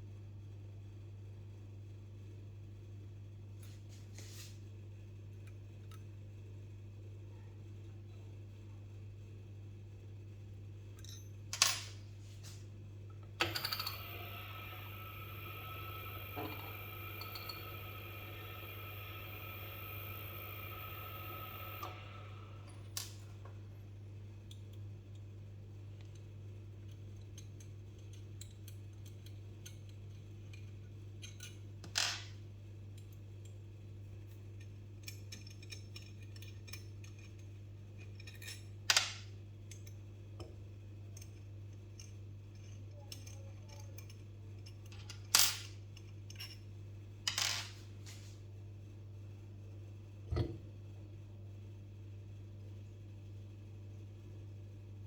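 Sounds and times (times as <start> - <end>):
steady low hum: 13.4 - 23.8.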